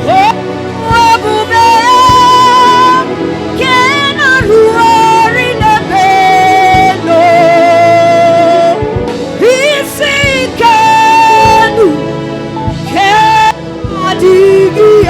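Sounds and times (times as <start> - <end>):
gospel singing with vibrato: 0.0 - 15.0
instrumental backing: 0.0 - 15.0.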